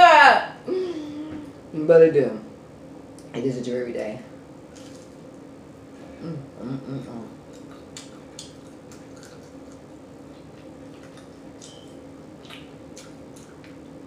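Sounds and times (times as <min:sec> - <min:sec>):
steady low hum: 0:00.0 - 0:14.0
person humming: 0:00.7 - 0:01.6, 0:06.2 - 0:07.3
wet chewing: 0:07.5 - 0:14.0.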